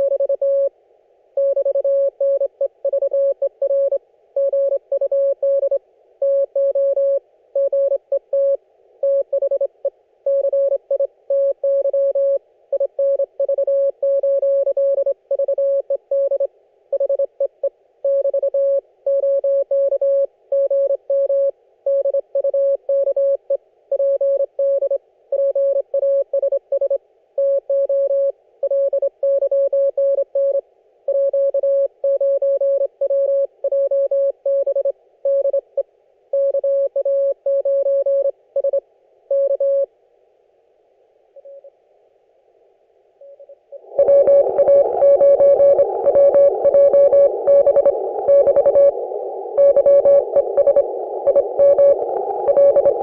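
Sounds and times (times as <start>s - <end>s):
morse code beeps: 43.8s - 53.0s.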